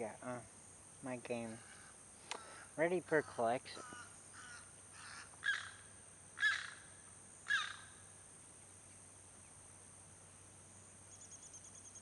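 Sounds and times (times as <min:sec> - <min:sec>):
bird calling: 0:01.4 - 0:08.0.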